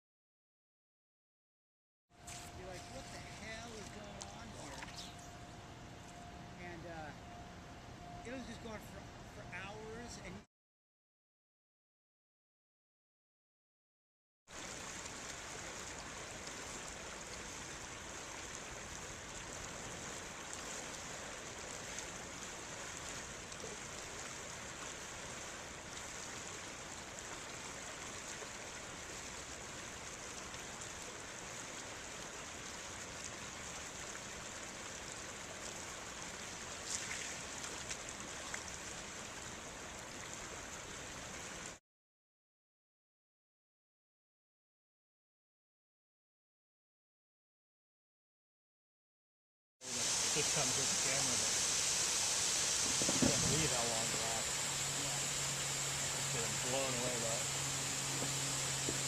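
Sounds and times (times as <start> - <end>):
river water rushing: 14.6 - 41.8, 49.9 - 59.0
brief clicks or splashes: 36.8 - 38.7.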